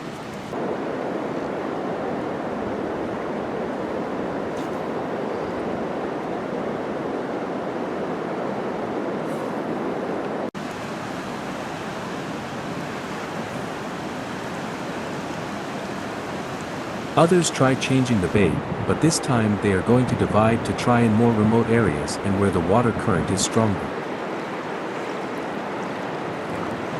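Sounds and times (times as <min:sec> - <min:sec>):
river water rushing through rapids: 0:10.6 - 0:19.5, 0:21.0 - 0:26.9.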